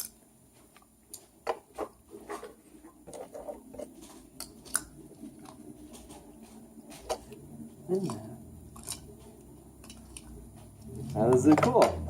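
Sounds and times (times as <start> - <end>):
plastic toys clicking and tapping: 7.0 - 12.0.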